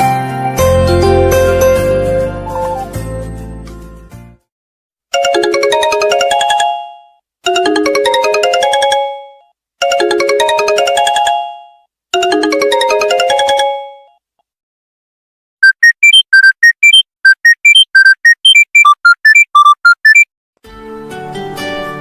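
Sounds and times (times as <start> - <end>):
mobile phone ringtone: 5.2 - 14.2, 15.6 - 20.2.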